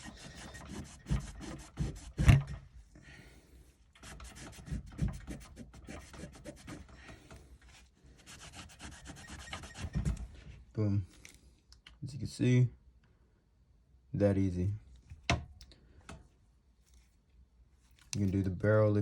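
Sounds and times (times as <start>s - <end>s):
towel rubbing on metal: 0.0s - 2.6s, 4.0s - 7.0s, 8.2s - 10.0s.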